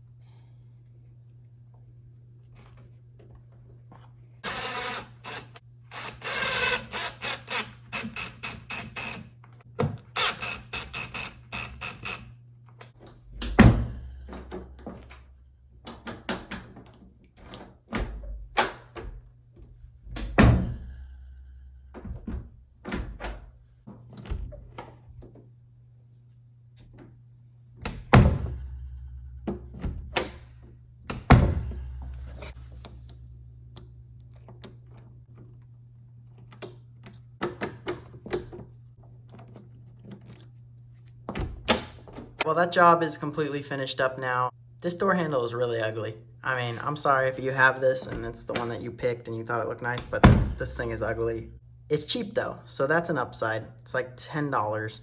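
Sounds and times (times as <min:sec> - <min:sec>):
loud thunks: 0:31.1 - 0:32.1, 0:50.1 - 0:50.8.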